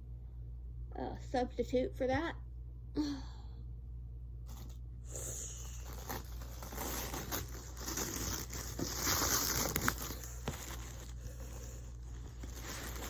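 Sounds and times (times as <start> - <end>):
wrapping paper crinkling and tearing: 4.5 - 13.0.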